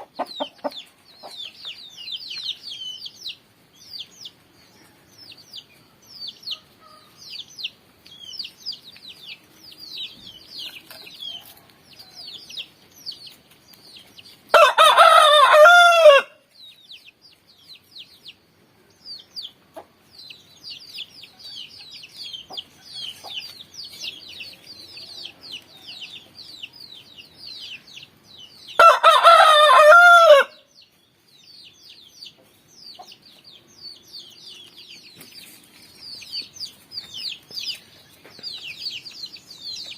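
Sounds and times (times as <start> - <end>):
rooster crowing: 14.5 - 16.4, 28.8 - 30.7.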